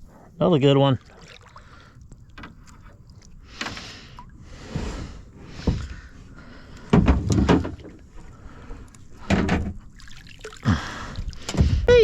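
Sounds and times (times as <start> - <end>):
hollow knocks and thumps: 6.9 - 8.0, 9.2 - 9.8, 11.5 - 11.9.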